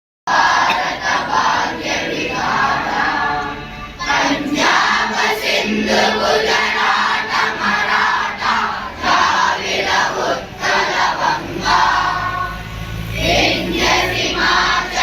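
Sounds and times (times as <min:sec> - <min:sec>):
children singing in unison: 0:00.3 - 0:15.0.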